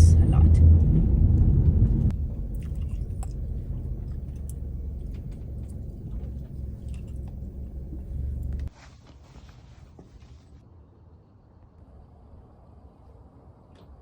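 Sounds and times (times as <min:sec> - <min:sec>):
car cabin rumble: 0:00.0 - 0:08.7.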